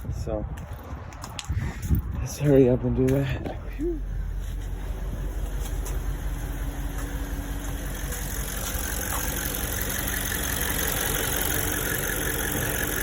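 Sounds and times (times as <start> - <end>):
car engine idling: 3.6 - 13.0.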